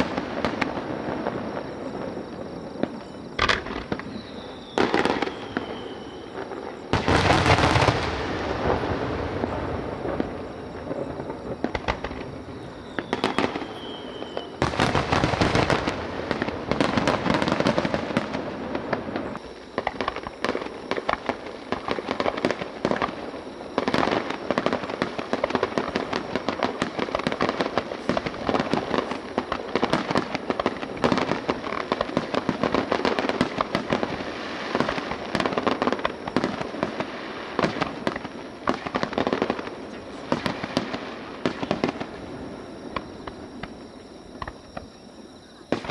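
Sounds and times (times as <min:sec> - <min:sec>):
fireworks booming bursts: 0:00.0 - 0:45.9
fireworks crackling barrage: 0:00.0 - 0:45.9
fireworks whistle: 0:00.0 - 0:45.9.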